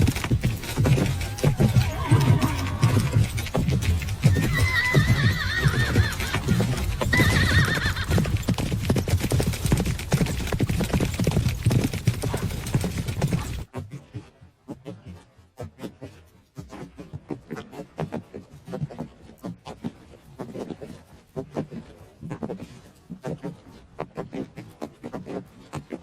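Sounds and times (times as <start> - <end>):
horse whinnying: 0.0 - 9.7
horses galloping hoofbeats: 0.0 - 26.0.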